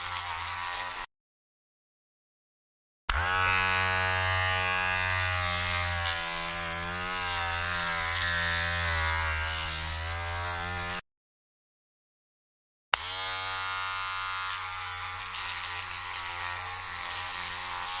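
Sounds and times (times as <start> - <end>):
electric hair trimmer buzzing: 0.0 - 1.1, 3.1 - 11.0, 13.0 - 18.0.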